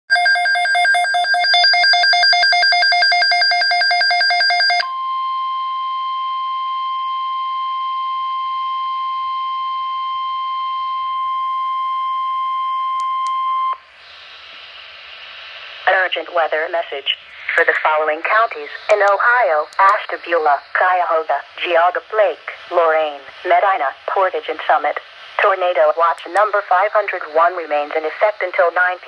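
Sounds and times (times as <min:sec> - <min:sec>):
steady high alarm tone: 0:00.1 - 0:13.8.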